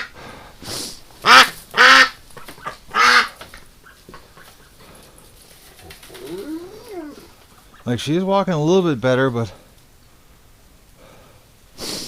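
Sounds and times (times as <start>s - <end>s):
duck quacking loudly: 1.2s - 3.4s.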